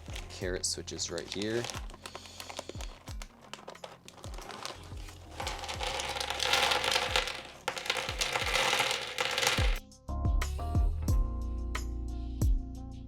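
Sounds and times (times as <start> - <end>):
plastic packaging crinkling: 0.0 - 9.8
music with kick-drum beat: 9.8 - 13.0.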